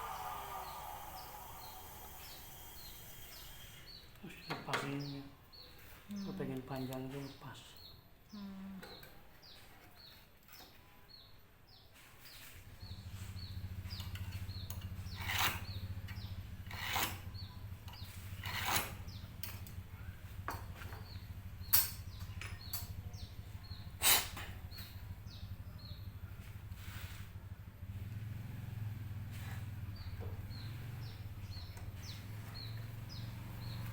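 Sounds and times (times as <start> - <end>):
steady low hum: 0.0 - 4.2
birds chirping: 0.0 - 33.9
knocks and scrapes on wood and metal: 12.0 - 19.8.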